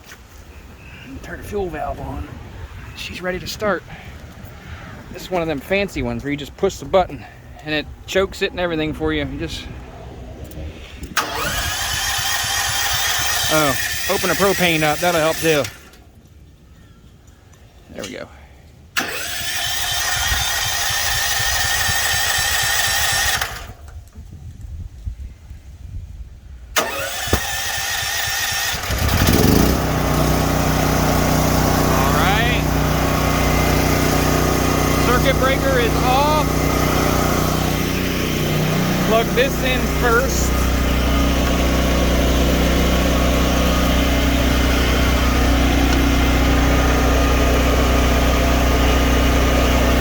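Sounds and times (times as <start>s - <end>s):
generator engine running: 11.0s - 16.0s, 19.0s - 23.8s, 26.8s - 50.0s
electric starter cranking: 11.0s - 16.1s, 19.0s - 24.0s, 26.8s - 50.0s.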